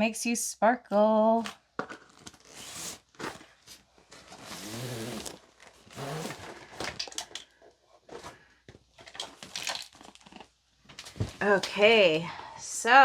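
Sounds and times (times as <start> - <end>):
plastic packaging crinkling: 9.0 - 11.2.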